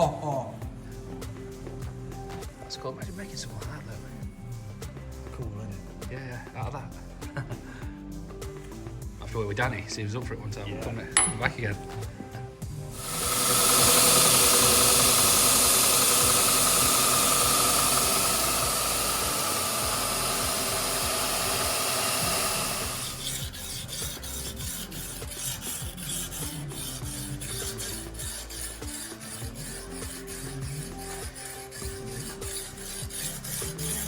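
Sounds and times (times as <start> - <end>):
abrasive tool rasping: 11.2 - 12.2, 12.8 - 34.0.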